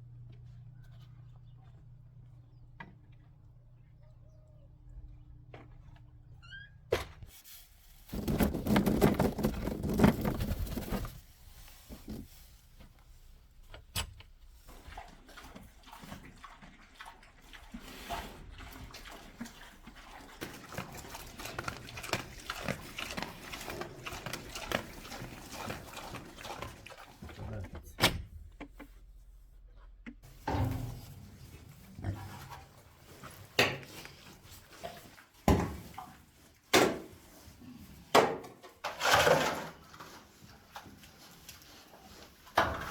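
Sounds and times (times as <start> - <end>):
rustling: 7.3 - 13.7
domestic animal noises: 14.9 - 27.5.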